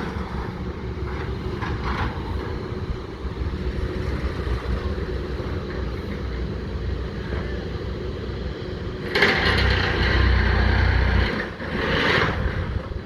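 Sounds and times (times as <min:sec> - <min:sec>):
construction machinery engine rumbling: 0:00.0 - 0:13.0
loud harsh machine noise: 0:08.8 - 0:13.0.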